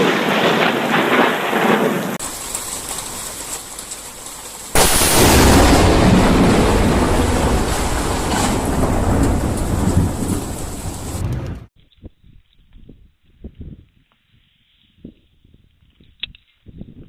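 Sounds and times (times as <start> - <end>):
thunder crack and rumble: 0.0 - 11.7
faint rain hiss: 2.2 - 11.4.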